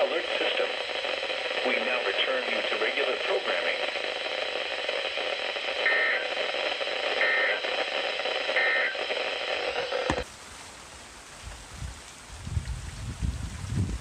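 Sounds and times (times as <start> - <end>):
digital data bursts: 0.0 - 10.2
radio hiss: 0.0 - 10.3
audio click: 9.7 - 10.2.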